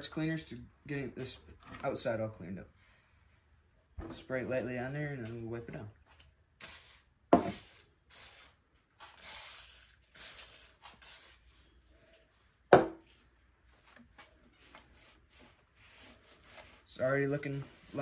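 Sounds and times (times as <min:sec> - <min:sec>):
aerosol spray hissing: 0:06.6 - 0:08.6, 0:09.2 - 0:11.4.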